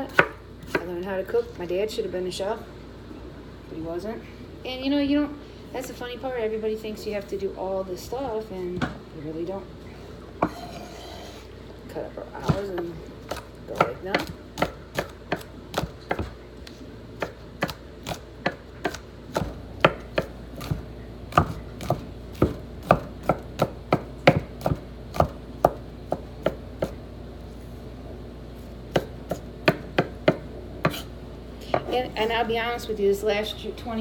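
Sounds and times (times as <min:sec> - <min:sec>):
knife chopping vegetables: 0:00.0 - 0:00.9, 0:10.4 - 0:11.4, 0:12.4 - 0:27.0, 0:28.9 - 0:31.1.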